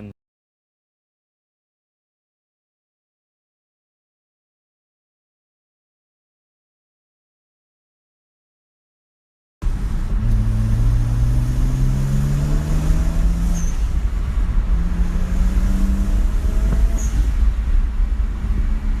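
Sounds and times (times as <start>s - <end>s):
car engine revving: 9.6s - 19.0s.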